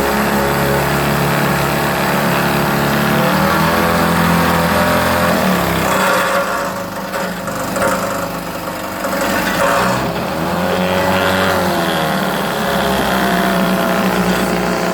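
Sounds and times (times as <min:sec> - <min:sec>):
outboard motor running: 0:00.0 - 0:14.9.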